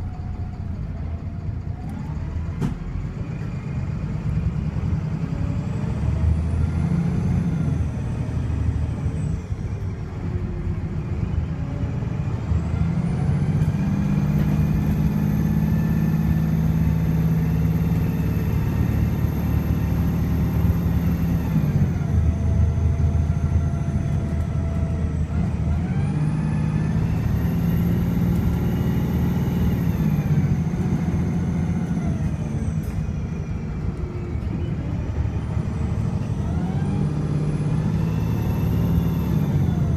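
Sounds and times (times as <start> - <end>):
bus diesel engine revving: 0.0 - 39.9.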